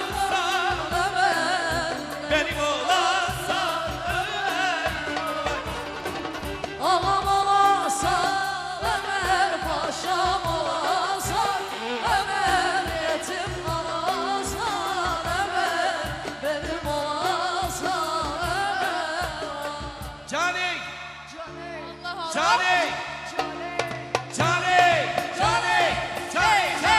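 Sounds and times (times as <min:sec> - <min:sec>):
band with steady drum beat: 0:00.0 - 0:26.9
person singing ornamented vocals: 0:06.8 - 0:19.8.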